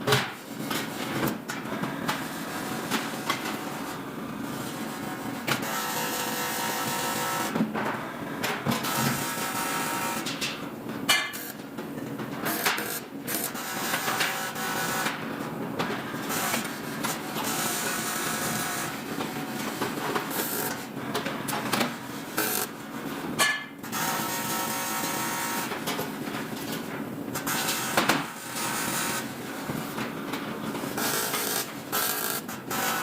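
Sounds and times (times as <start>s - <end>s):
hissing buzzing metalworking tool: 2.3s - 7.6s, 30.9s - 33.0s.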